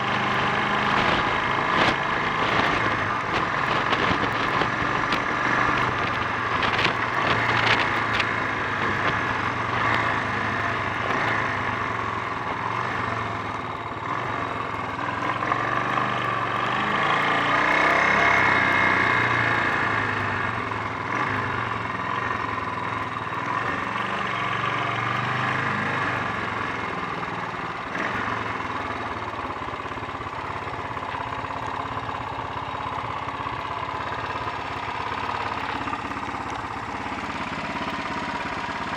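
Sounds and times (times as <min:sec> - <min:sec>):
motorcycle engine running: 0:00.0 - 0:38.9
wind noise: 0:00.1 - 0:09.3.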